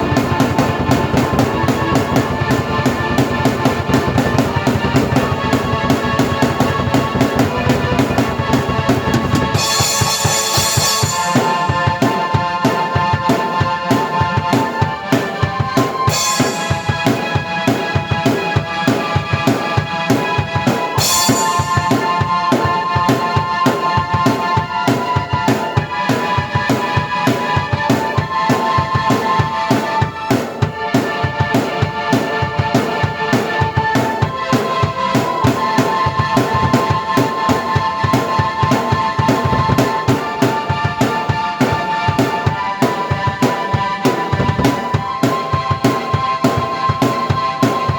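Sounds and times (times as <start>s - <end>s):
bass drum and snare beat: 0.0s - 47.9s
sustained keyboard chords: 0.0s - 47.9s
bright high wash: 9.5s - 11.8s.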